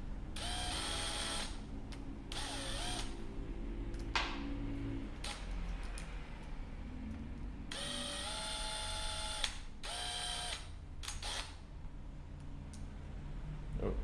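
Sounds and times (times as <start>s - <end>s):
cordless drill motor whining: 0.4s - 1.7s, 2.3s - 3.3s, 7.7s - 11.6s.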